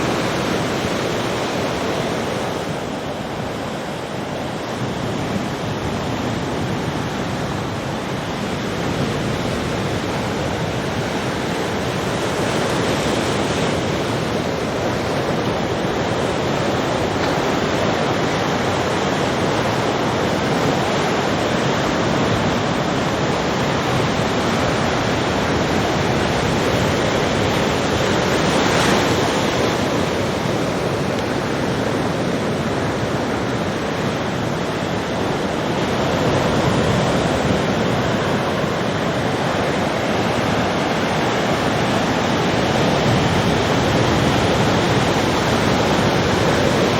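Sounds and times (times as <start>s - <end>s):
ocean waves breaking: 0.0s - 46.9s
wind buffeting microphone: 0.0s - 46.9s.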